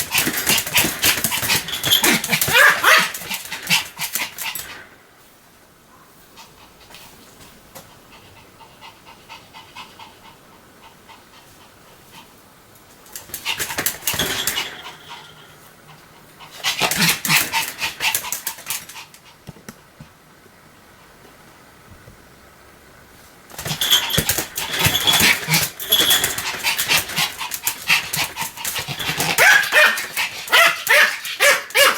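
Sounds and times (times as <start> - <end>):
dog barking rapidly: 1.9 - 4.0, 28.9 - 31.9
dog panting: 7.9 - 12.4.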